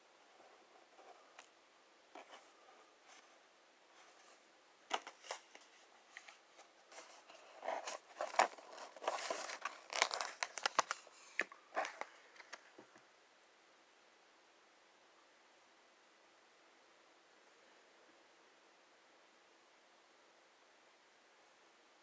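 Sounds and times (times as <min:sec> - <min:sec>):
packaging crinkling and tearing: 0:07.0 - 0:12.7.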